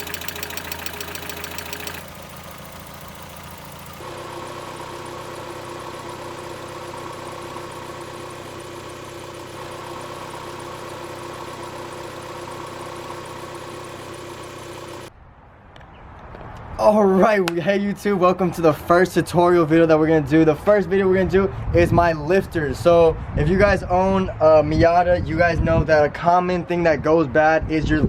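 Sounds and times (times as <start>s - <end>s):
car engine idling: 0.0s - 15.1s
fast even lifter ticking: 0.0s - 15.1s.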